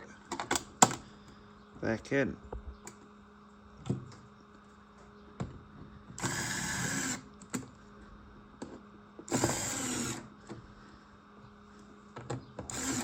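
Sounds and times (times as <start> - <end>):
electric screwdriver running: 6.2 - 7.2, 9.3 - 10.3, 12.7 - 13.0.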